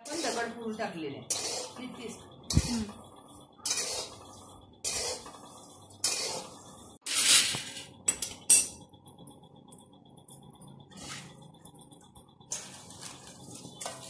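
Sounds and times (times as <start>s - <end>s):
spatula scraping a pan: 0.0s - 2.9s, 3.6s - 7.9s, 12.5s - 14.0s.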